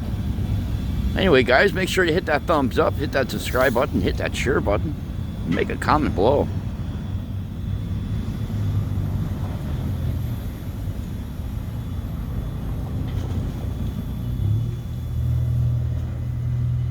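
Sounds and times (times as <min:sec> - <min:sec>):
vehicle rumble: 0:00.0 - 0:16.9.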